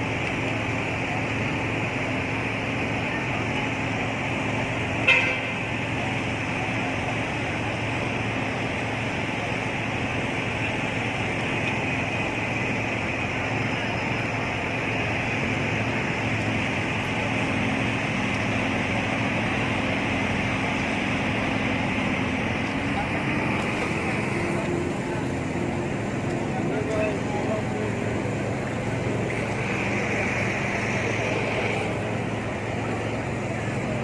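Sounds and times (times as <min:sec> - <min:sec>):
city street traffic: 0:00.0 - 0:34.0
short sharp horn toot: 0:05.0 - 0:05.6.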